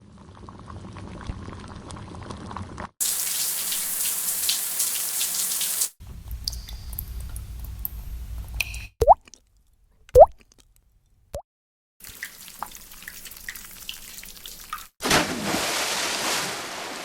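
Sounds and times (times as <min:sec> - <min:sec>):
shower spray: 0:03.0 - 0:06.0
water dripping in a cave: 0:04.5 - 0:10.7, 0:12.0 - 0:15.0.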